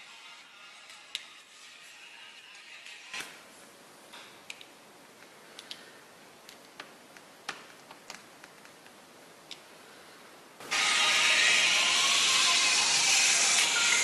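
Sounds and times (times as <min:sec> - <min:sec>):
low steady hiss: 0:00.0 - 0:10.8.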